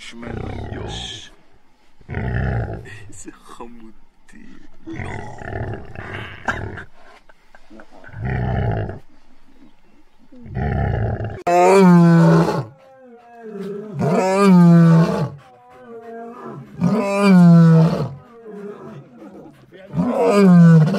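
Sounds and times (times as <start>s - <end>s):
lion grunting: 0.1s - 1.3s, 2.0s - 3.2s, 4.4s - 7.1s, 7.7s - 9.7s, 10.3s - 20.9s
lion roaring: 2.0s - 3.0s, 4.8s - 6.9s, 8.0s - 9.0s, 10.4s - 20.9s.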